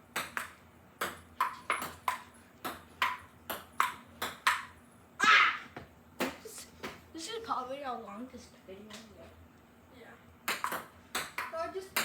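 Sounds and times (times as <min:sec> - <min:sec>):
ball clicking on paddles and table: 0:00.1 - 0:04.8, 0:10.4 - 0:12.0
person shouting: 0:05.2 - 0:05.7.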